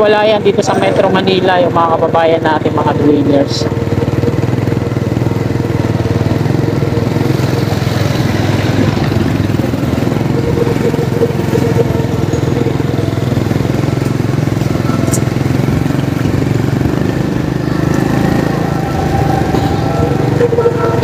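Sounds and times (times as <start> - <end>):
motorcycle engine cruising: 0.0 - 21.0
road and air noise: 0.0 - 21.0.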